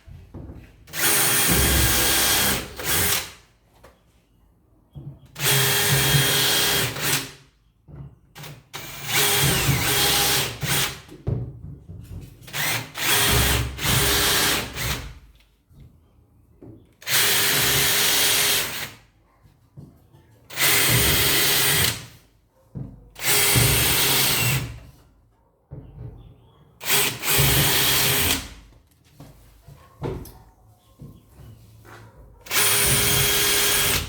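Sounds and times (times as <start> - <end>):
power drill-driver running: 1.0 - 3.2, 5.4 - 7.2, 8.8 - 10.9, 12.6 - 15.0, 17.1 - 18.9, 20.5 - 22.0, 23.2 - 24.7, 26.8 - 28.4, 32.5 - 34.0.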